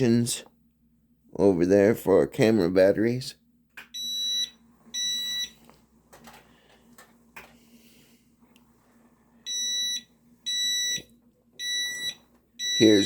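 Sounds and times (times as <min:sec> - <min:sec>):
high-pitched reverse warning beeps: 0:11.6 - 0:13.0.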